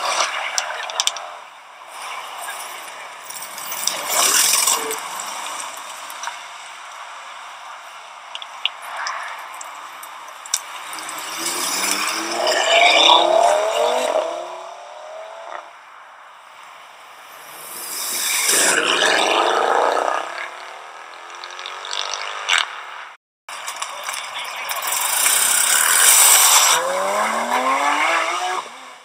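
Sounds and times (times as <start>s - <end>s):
cars accelerating past: 10.6s - 15.7s, 17.2s - 22.9s, 24.7s - 29.0s.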